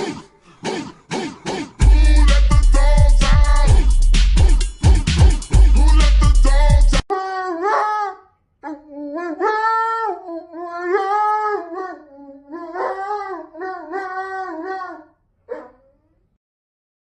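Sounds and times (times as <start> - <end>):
dog howling and whining: 7.1 - 16.1.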